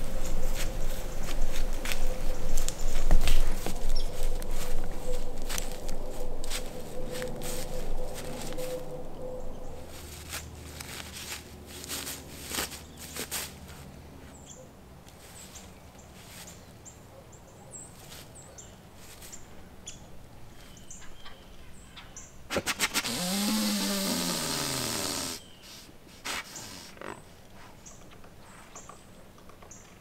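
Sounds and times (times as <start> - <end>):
deer snorting puffs: 22.5 - 27.8
deer hissing wheeze: 22.6 - 27.2.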